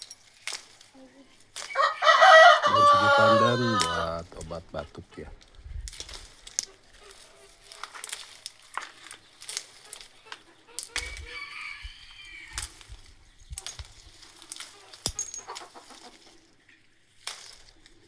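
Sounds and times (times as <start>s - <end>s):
chicken calling: 1.0s - 5.3s, 10.1s - 12.7s
sharp clicks and crackles: 7.7s - 11.0s.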